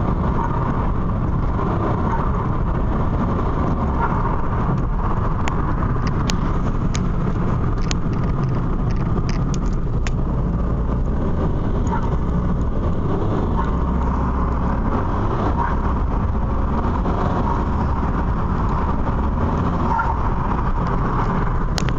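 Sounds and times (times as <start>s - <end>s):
turbodiesel engine accelerating: 0.0s - 21.9s
sharp clicks: 4.7s - 10.2s.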